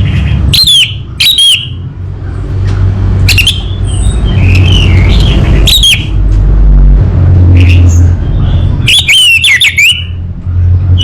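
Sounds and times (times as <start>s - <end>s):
loud low rumble: 1.8s - 9.0s.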